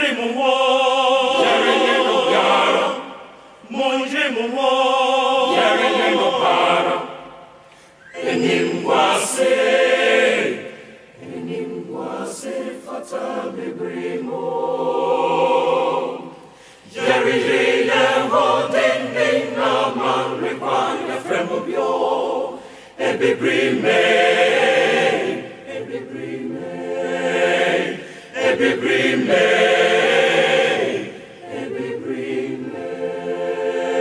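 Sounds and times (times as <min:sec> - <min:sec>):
choir singing: 0:00.0 - 0:34.0.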